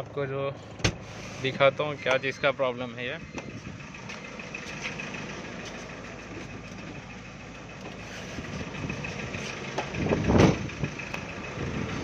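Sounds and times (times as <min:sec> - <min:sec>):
car engine idling: 0:00.0 - 0:12.0
dashboard rattle: 0:07.9 - 0:11.3.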